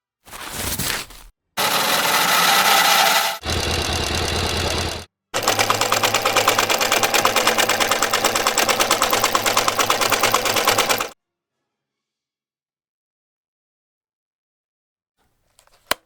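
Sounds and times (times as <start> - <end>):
small mechanism clattering: 4.8 - 11.2.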